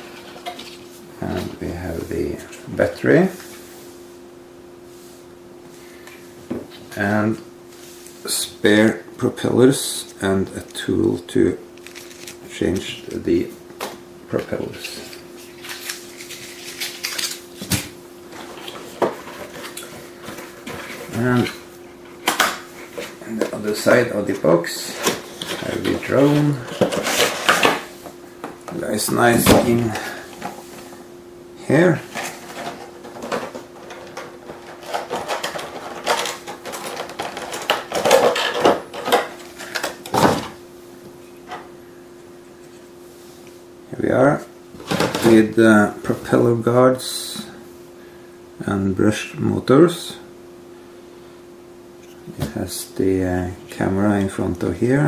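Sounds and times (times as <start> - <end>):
faint steady hum: 0.0 - 55.0
cardboard and plastic rustling: 11.8 - 13.1, 13.8 - 31.0, 32.0 - 40.6
plastic parts clicking and rattling: 32.1 - 40.0.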